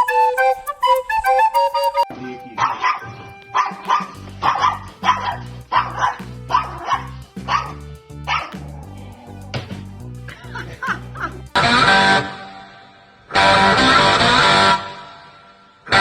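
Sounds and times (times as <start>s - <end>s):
background music with beat: 0.0s - 11.9s
dog barking: 2.6s - 8.8s.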